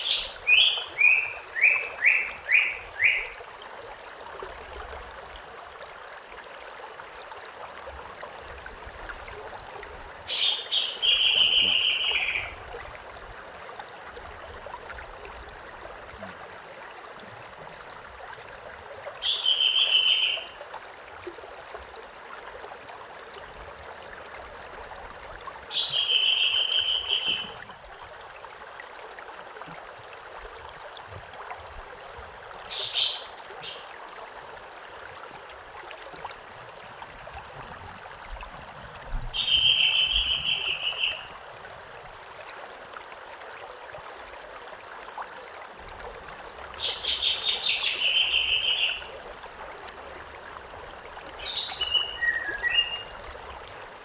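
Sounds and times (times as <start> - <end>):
bird calling: 0.0 - 3.4, 10.3 - 12.6, 19.2 - 20.6, 25.7 - 27.6, 39.4 - 41.3, 46.8 - 49.1, 51.4 - 53.2
stream flowing: 0.0 - 54.0.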